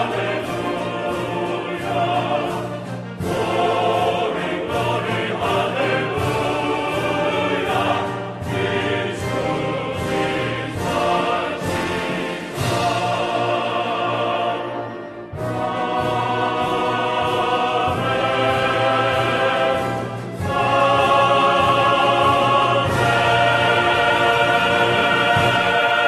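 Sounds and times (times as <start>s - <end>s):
choir singing held notes: 0.0s - 26.0s.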